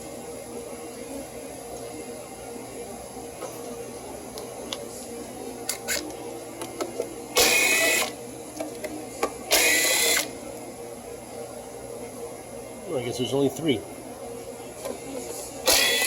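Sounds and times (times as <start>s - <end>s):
cordless power tool whirring: 7.4s - 8.2s, 9.5s - 10.4s, 15.6s - 16.0s.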